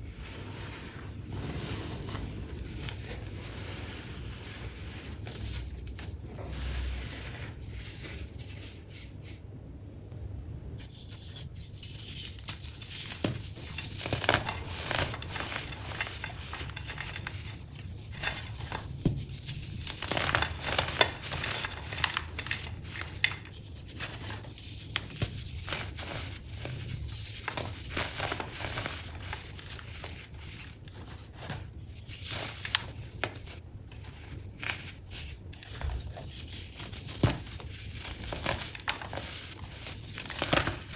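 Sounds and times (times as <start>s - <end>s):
baking soda crunching: 12.6s - 40.9s.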